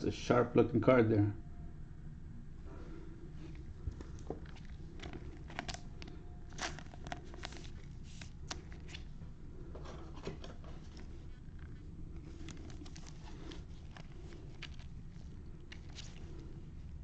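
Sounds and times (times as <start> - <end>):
steady low hum: 0.0 - 17.0
cards and packaging crinkling: 3.4 - 17.0.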